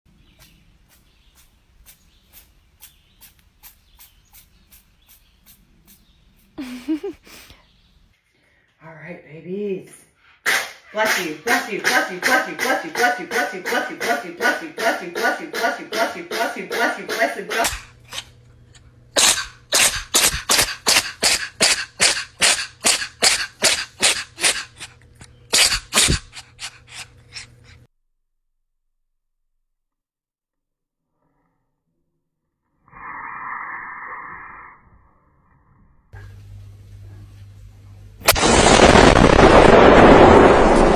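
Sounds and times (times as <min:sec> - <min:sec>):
cat sneezing: 0:10.4 - 0:18.3, 0:19.2 - 0:27.8.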